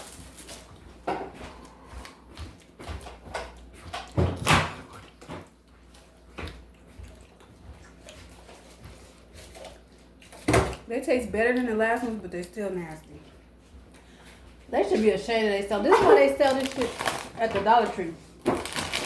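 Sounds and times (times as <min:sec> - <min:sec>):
crunchy snack being chewed: 0:00.0 - 0:10.5, 0:16.1 - 0:17.4, 0:18.5 - 0:19.0.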